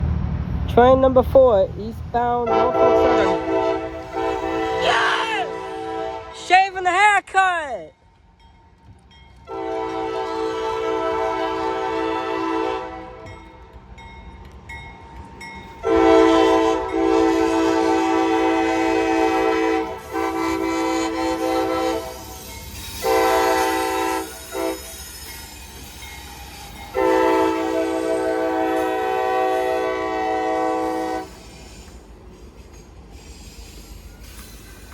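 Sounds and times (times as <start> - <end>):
freight train rumbling: 0.0 - 34.9
locomotive air horn blasts: 2.4 - 6.6, 9.5 - 13.4, 15.8 - 22.4, 23.0 - 25.0, 26.9 - 31.5.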